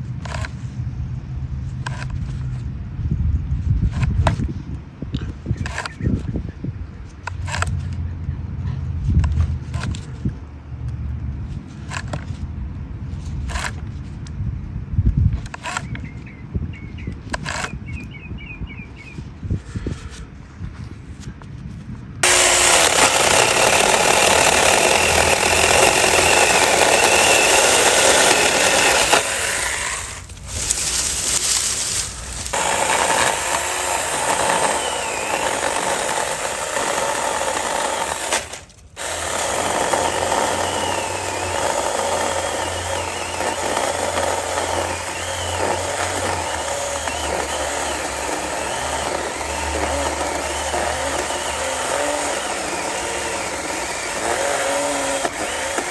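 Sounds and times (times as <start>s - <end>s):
electric chainsaw cutting wood: 22.2s - 55.9s.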